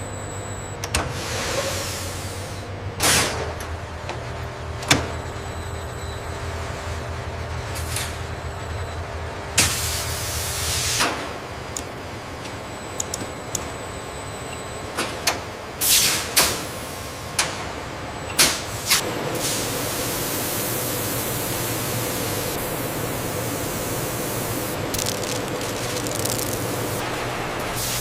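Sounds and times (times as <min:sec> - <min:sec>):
machinery sharp clicks: 0:11.7 - 0:13.7, 0:24.7 - 0:27.0
machinery hissing: 0:18.8 - 0:28.0.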